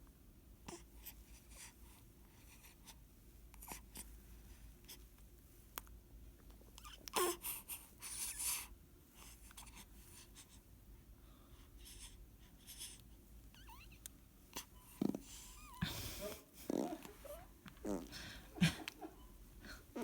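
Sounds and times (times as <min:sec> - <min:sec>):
infant squeak: 0:13.6 - 0:14.0
infant snuffly breaths: 0:14.6 - 0:20.0.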